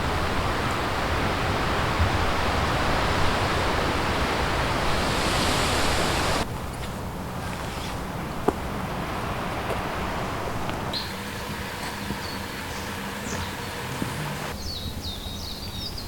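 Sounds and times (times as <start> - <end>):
wind buffeting microphone: 0.0 - 6.5
strong wind rushing through trees: 0.0 - 15.4.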